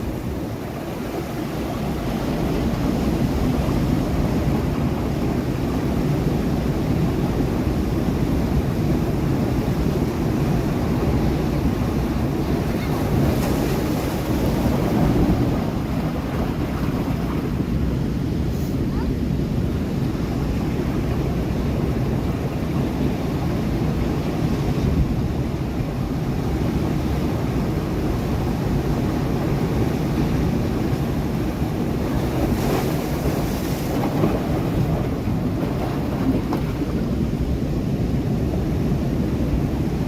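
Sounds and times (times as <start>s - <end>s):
waves breaking on rocks: 0.0s - 17.8s, 25.7s - 37.6s
wind buffeting microphone: 0.0s - 40.0s.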